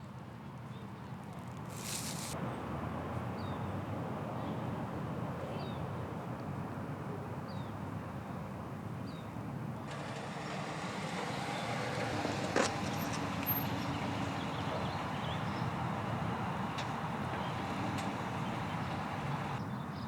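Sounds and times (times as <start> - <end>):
road traffic: 1.4 - 6.6, 9.5 - 19.9
bird chirps: 12.9 - 19.6.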